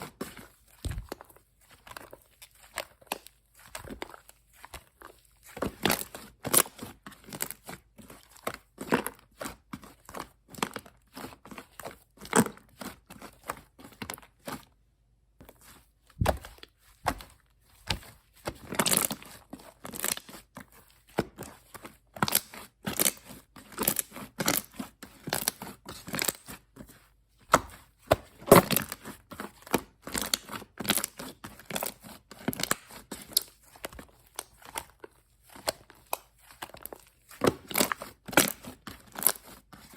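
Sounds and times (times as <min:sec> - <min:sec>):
slime squelching and crackling: 0:15.6 - 0:39.9.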